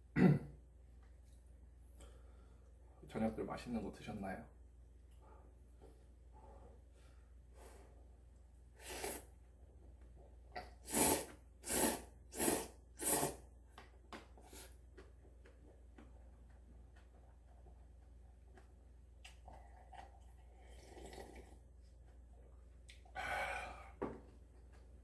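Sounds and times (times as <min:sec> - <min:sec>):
person slurping noodles: 0:08.8 - 0:09.3, 0:10.6 - 0:13.4, 0:19.5 - 0:21.6.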